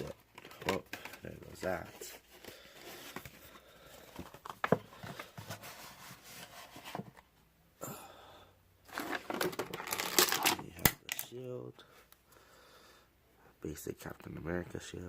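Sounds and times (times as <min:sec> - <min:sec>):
plastic packaging crinkling: 0:08.9 - 0:11.3.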